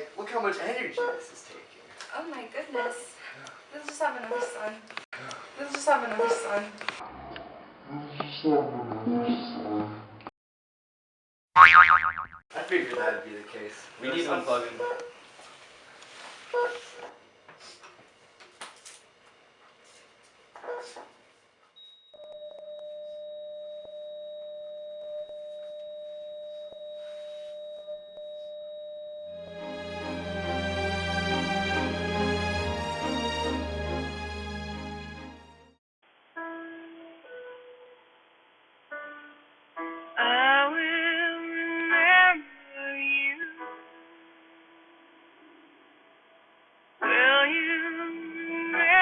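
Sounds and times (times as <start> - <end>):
person singing: 29.4 - 35.3
slow piano music: 29.4 - 35.7.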